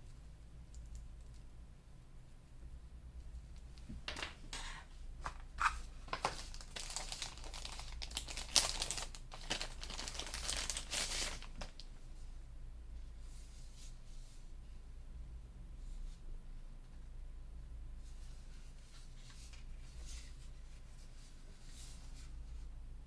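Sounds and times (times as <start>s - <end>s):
crinkling and rustling: 3.4s - 12.0s, 18.0s - 22.7s.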